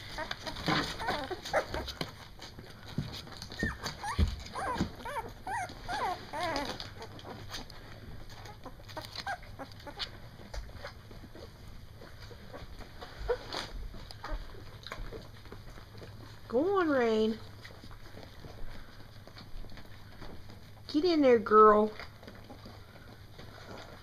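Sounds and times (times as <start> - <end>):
puppies whimpering and squeaking: 0.0 - 16.4, 22.1 - 24.0.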